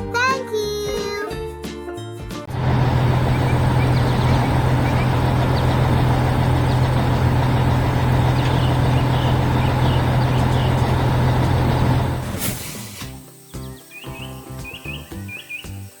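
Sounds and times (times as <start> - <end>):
heavy vehicle engine rumbling: 2.5 - 13.0.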